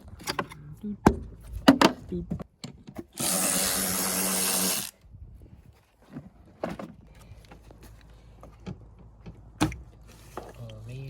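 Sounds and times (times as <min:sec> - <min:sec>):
power drill running: 0:03.2 - 0:04.9.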